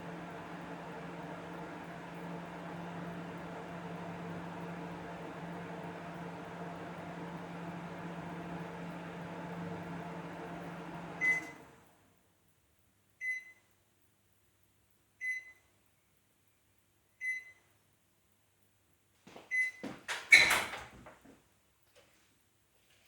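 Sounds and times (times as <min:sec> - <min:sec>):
microwave oven humming: 0:00.0 - 0:12.0
microwave short beeps: 0:11.2 - 0:11.6, 0:13.2 - 0:13.6, 0:15.2 - 0:15.6, 0:17.2 - 0:17.6, 0:19.5 - 0:19.8.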